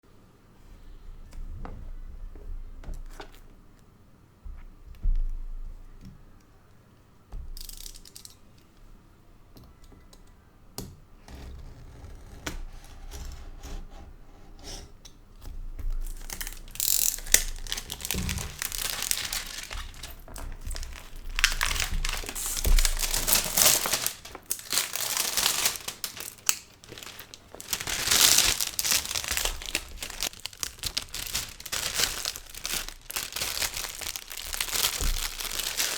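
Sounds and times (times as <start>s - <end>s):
packaging clicks and taps: 15.8s - 35.9s
wrapping crinkling and tearing: 15.9s - 35.9s.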